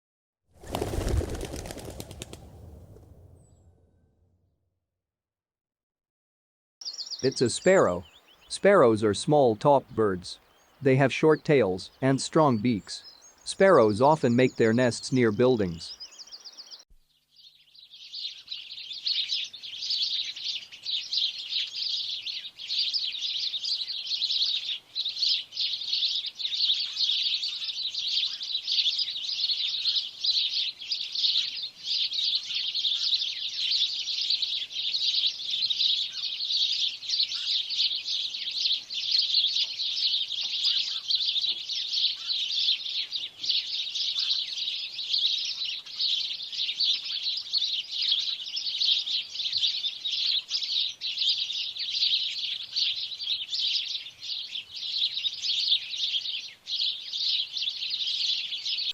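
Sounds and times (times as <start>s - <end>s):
sparrows chirping: 6.8s - 58.9s.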